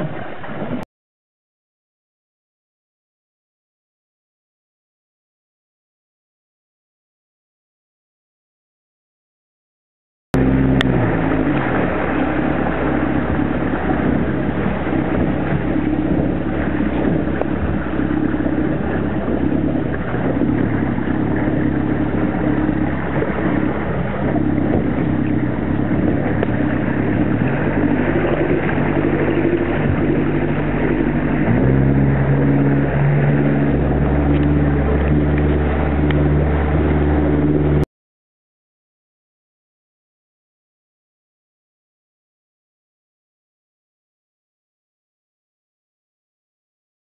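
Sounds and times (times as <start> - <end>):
boat engine running: 0.0 - 0.8, 10.4 - 37.9.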